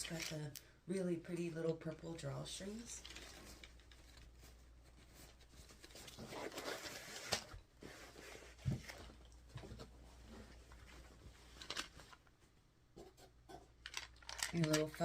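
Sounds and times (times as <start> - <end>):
packaging rustling: 3.0 - 12.3, 13.8 - 15.0.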